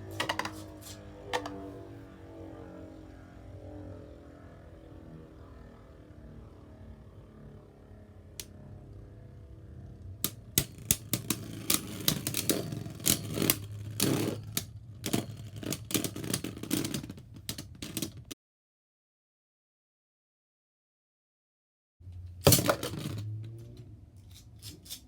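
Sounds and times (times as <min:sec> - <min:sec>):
plastic tops clacking: 0:00.1 - 0:00.7.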